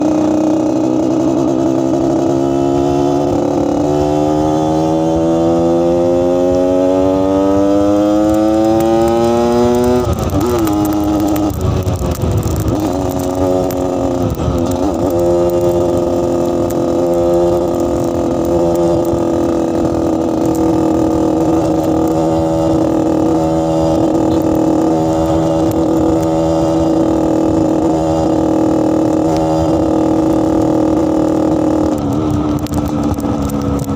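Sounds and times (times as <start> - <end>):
motorcycle engine revving and idling: 0.0 - 33.9.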